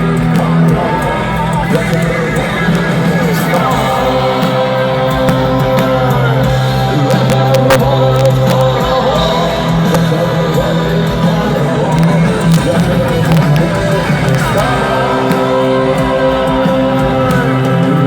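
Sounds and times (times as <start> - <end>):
person singing: 0.0 - 18.0
rock band playing live: 0.0 - 18.0.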